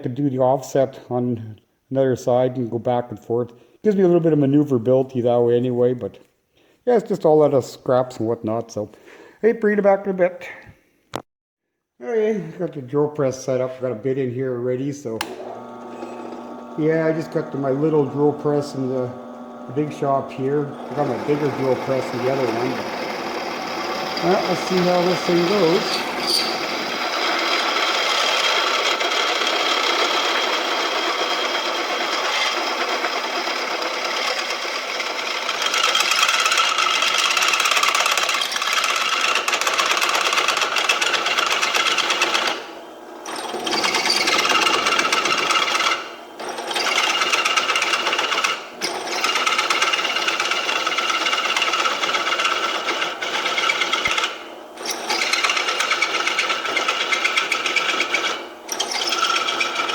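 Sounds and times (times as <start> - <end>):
drill press drilling steel: 15.2 - 59.9.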